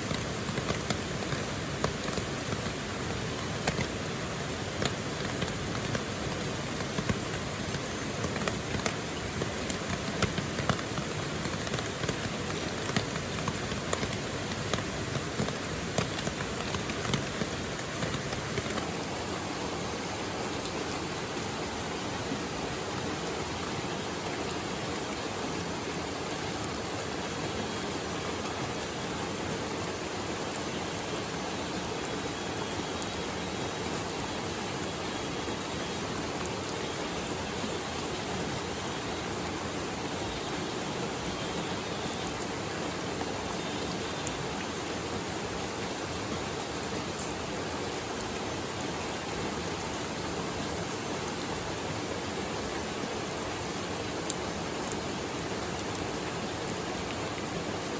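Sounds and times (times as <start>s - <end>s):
sharp raindrop hits: 0.0s - 19.4s
steady rain: 0.0s - 57.9s.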